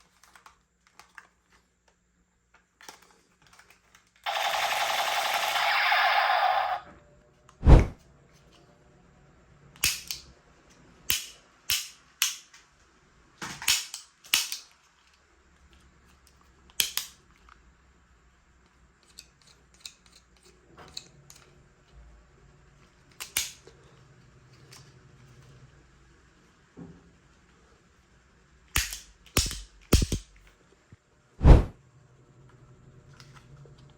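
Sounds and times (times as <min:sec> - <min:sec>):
toy gun snapping: 0:04.3 - 0:06.8, 0:09.8 - 0:10.3, 0:11.1 - 0:12.6, 0:13.6 - 0:14.7, 0:16.8 - 0:17.2, 0:23.2 - 0:23.6, 0:28.8 - 0:30.4.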